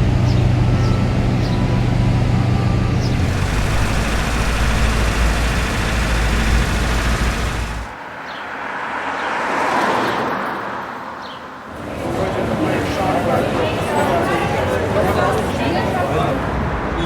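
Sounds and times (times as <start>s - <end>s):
vehicle engine rumble: 0.0s - 8.0s.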